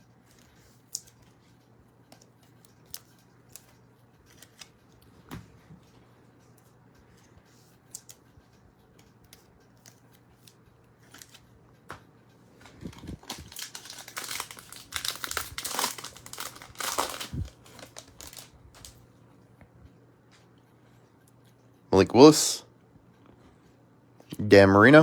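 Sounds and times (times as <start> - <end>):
cards clicking and rustling: 0.2 - 5.5, 6.6 - 8.3, 9.0 - 19.0
foil wrapper crinkling: 12.7 - 19.0.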